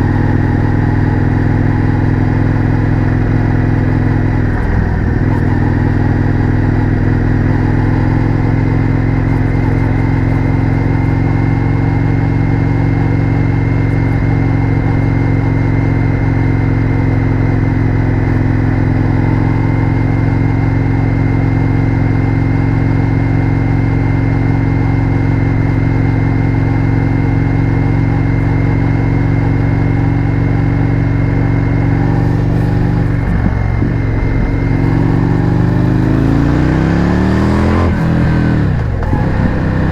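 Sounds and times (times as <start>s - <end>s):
motorcycle engine cruising: 0.0s - 39.9s.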